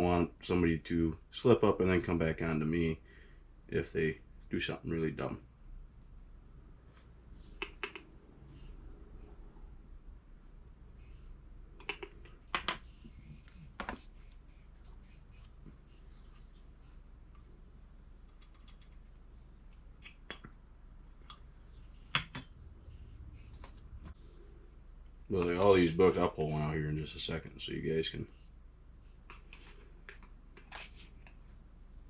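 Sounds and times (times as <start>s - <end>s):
faint low hum: 0.0s - 32.0s
clicks and taps of handled parts: 11.8s - 12.8s, 20.0s - 20.6s.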